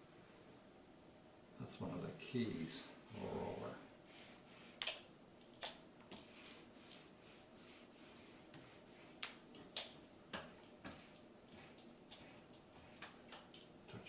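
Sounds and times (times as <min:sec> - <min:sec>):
paint roller hiss: 0:01.9 - 0:04.9, 0:06.2 - 0:09.4.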